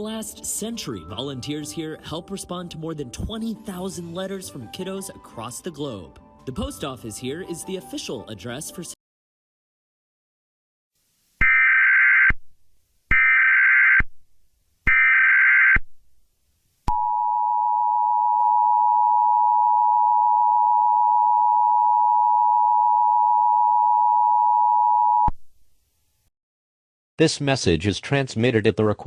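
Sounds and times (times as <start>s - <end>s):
data burst screech: 11.4s - 12.4s.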